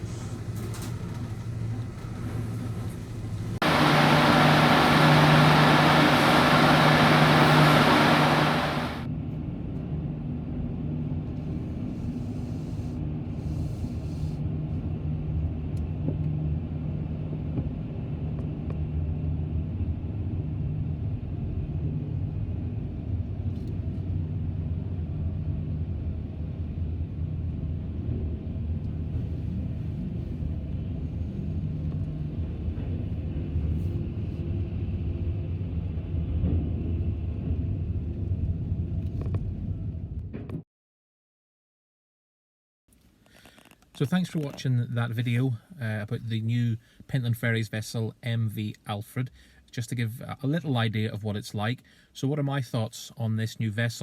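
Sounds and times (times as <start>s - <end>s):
ferry engines droning: 0.0s - 9.1s
loud rushing hiss: 3.0s - 9.1s.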